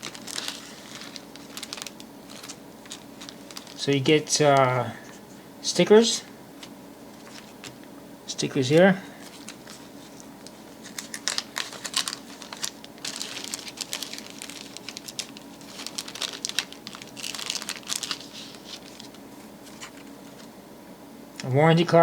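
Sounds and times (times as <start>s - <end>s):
packaging crinkling: 0.0s - 4.8s, 6.6s - 7.8s, 9.2s - 20.5s.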